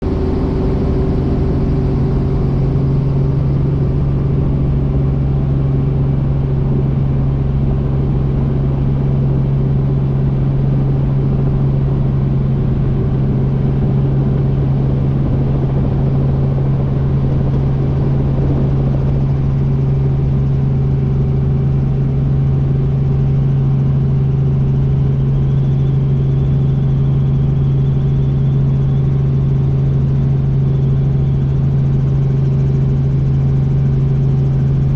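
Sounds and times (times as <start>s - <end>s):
helicopter running: 0.0s - 34.9s
faint high whine: 9.1s - 34.9s.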